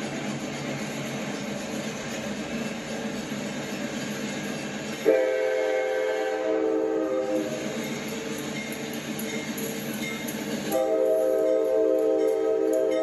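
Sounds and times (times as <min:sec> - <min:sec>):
passing train: 0:00.0 - 0:13.0
locomotive air horn chord: 0:05.0 - 0:07.5, 0:10.7 - 0:13.0.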